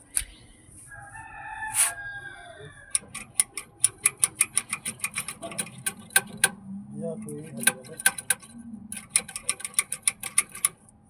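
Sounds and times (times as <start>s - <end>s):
air compressor fast ticking: 3.0s - 6.6s, 7.3s - 10.8s.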